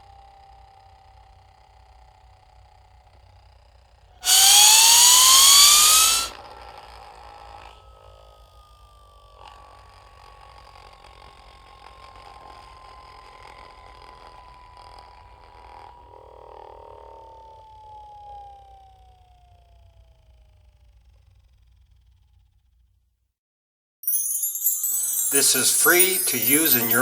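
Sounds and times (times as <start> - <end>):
electronic hum: 4.2 - 6.3
rising rushing whine: 4.2 - 6.3
falling electronic tone: 4.2 - 6.4.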